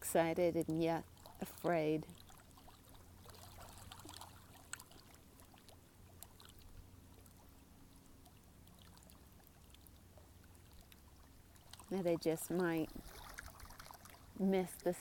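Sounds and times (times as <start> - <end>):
faint low hum and hiss: 0.0 - 15.0.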